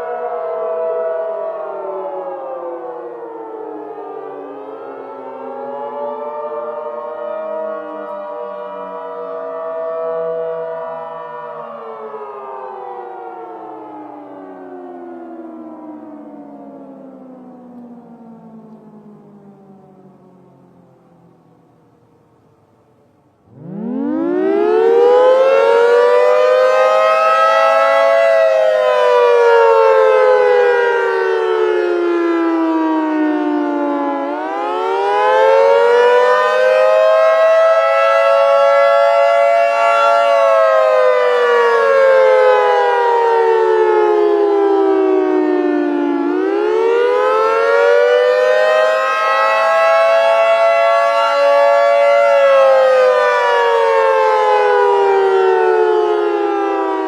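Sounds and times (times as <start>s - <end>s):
warning siren wailing: 0.0s - 57.0s.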